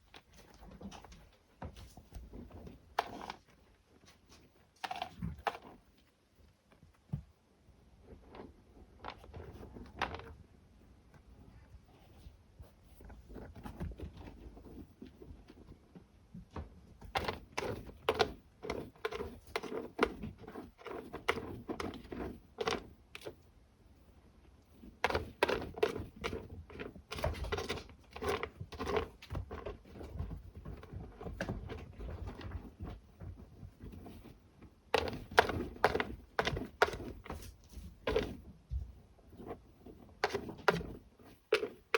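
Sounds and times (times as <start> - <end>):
kittens scratching in cat litter: 0.0 - 6.1, 8.0 - 10.4, 11.2 - 23.5, 24.6 - 41.9.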